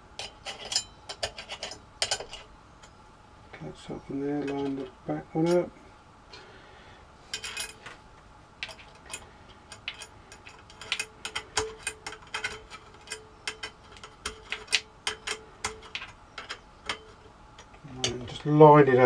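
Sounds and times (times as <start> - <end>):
metal parts clicking and tapping: 0.2 - 3.0, 4.4 - 5.7, 7.3 - 8.0, 8.6 - 18.6.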